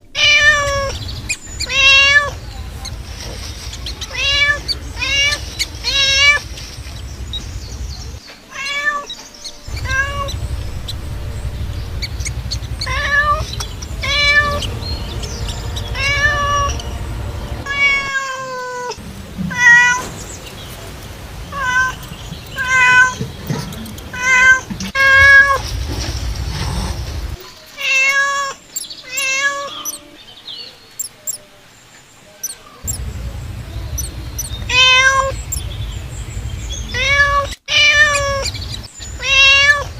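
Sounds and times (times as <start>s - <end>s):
cat meowing: 0.0s - 1.0s, 1.6s - 3.0s, 4.0s - 6.5s, 8.5s - 16.8s, 17.6s - 20.1s, 21.5s - 23.3s, 24.1s - 25.6s, 27.8s - 30.0s, 33.9s - 35.6s, 36.8s - 39.9s.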